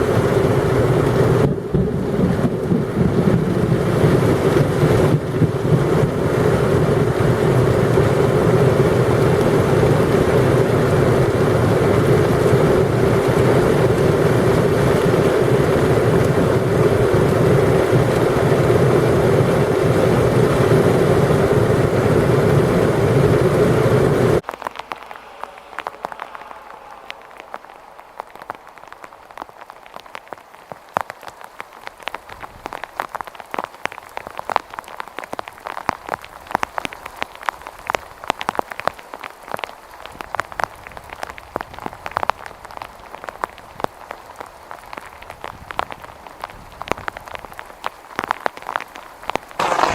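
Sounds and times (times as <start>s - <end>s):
rain on a hard surface: 0.0s - 49.9s
loud rushing noise: 24.4s - 30.0s, 49.6s - 49.9s.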